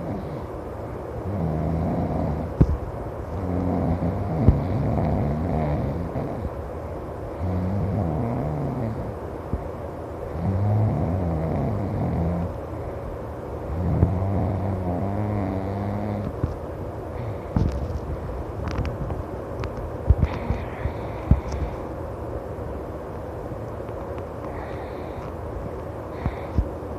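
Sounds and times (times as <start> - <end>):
person snoring loudly: 1.2 - 2.5, 3.4 - 6.5, 7.4 - 9.1, 10.4 - 12.5, 13.7 - 16.2.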